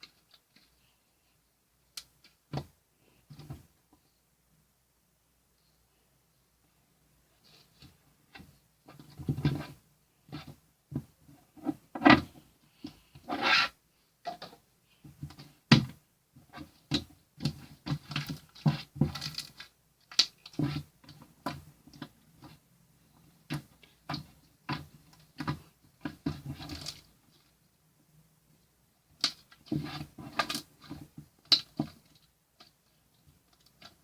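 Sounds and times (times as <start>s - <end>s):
rubbing and scratching: 7.4s - 13.8s, 23.4s - 27.6s, 29.2s - 34.0s.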